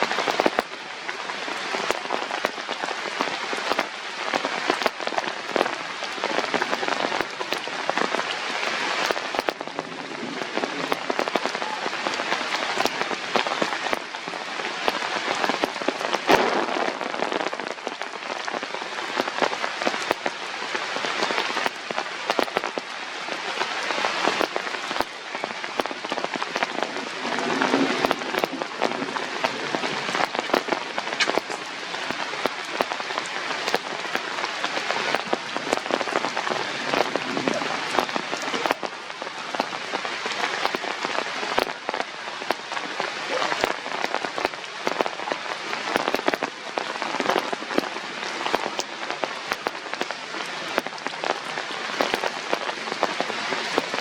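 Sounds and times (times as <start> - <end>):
rain falling: 0.0 - 54.0
small crackles: 0.0 - 54.0.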